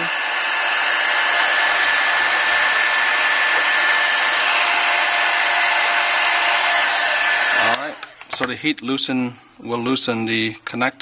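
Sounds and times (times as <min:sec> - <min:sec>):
hot-air blower rushing with whine: 0:00.0 - 0:08.5.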